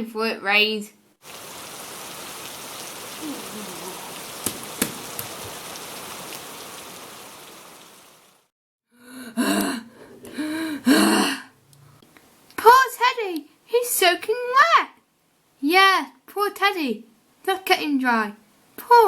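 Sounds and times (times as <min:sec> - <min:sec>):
rain hiss: 0:01.2 - 0:08.5
cartoon character vocal sounds: 0:03.2 - 0:04.1.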